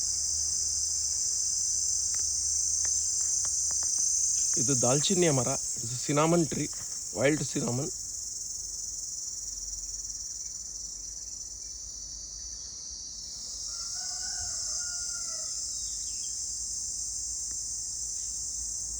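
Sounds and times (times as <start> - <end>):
cicadas buzzing: 0.0 - 18.9
rooster crowing: 13.6 - 15.8.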